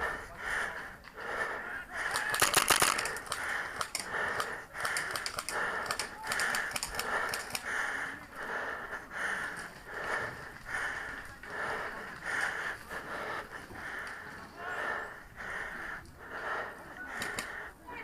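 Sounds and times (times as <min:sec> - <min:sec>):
person panting heavily: 0:00.0 - 0:18.0
faint clicks: 0:02.1 - 0:08.4, 0:13.9 - 0:14.6, 0:16.9 - 0:17.7.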